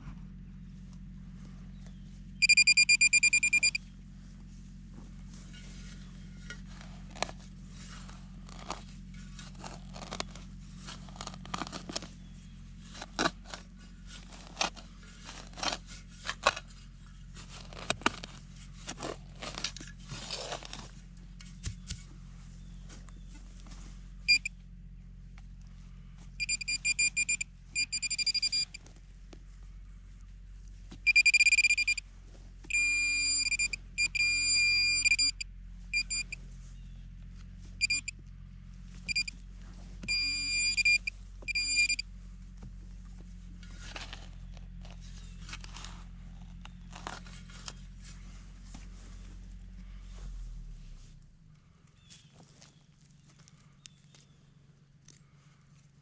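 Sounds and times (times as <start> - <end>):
digging in soil: 1.4 - 24.5, 38.9 - 56.0
metal detector rapid beeps: 2.4 - 3.8, 24.3 - 24.5, 26.4 - 28.8, 31.1 - 32.0, 32.7 - 35.4, 36.0 - 36.4, 37.8 - 38.1, 39.1 - 39.3, 40.1 - 42.0.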